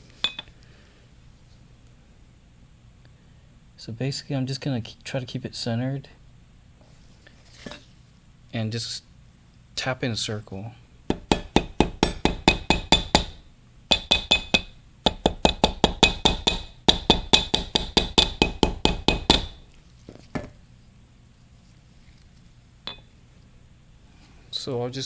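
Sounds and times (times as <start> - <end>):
hammer tapping on metal: 11.1 - 19.6, 22.9 - 23.1.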